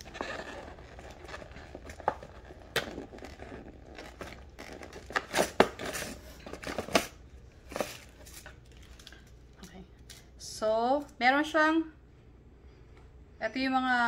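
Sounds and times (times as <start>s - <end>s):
plastic and cardboard rustling: 0.0s - 9.2s.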